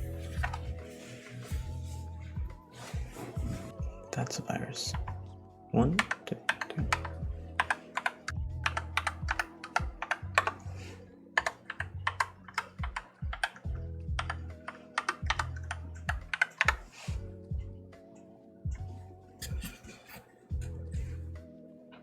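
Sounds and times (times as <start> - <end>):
background music: 0.0 - 22.0
mechanical keyboard typing: 5.9 - 10.7, 11.4 - 17.0.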